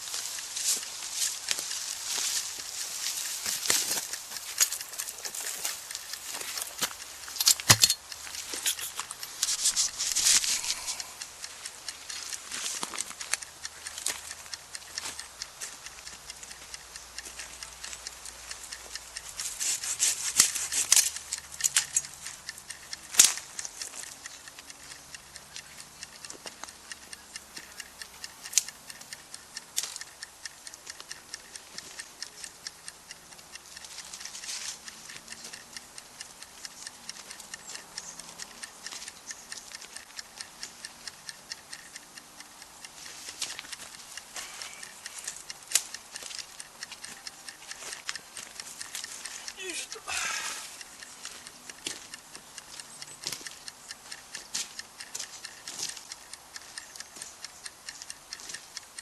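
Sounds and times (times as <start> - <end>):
campfire crackling and popping: 0.0 - 13.4.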